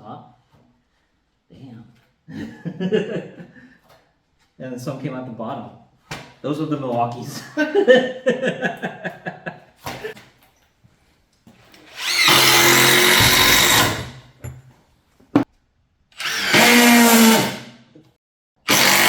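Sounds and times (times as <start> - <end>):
impact driver driving screws: 11.8 - 14.2, 16.2 - 17.6, 18.7 - 19.0.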